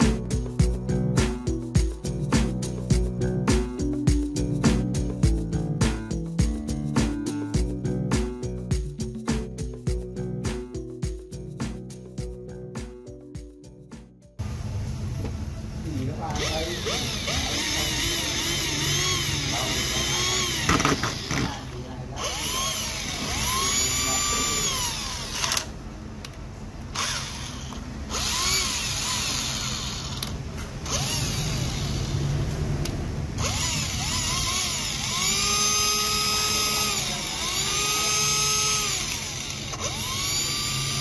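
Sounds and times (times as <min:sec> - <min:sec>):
cordless drill motor whine: 0:16.3 - 0:25.8, 0:26.9 - 0:32.4, 0:33.4 - 0:41.0.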